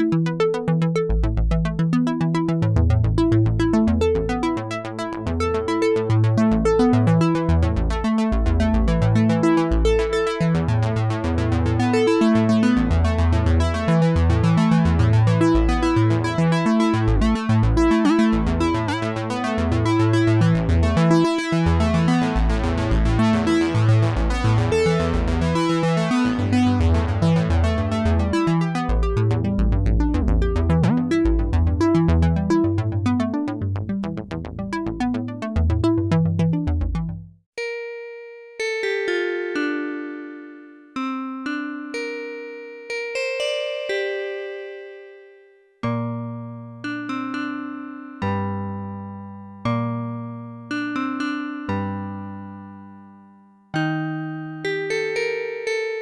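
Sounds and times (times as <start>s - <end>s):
synthesizer playing bass and chords: 0.0s - 37.3s.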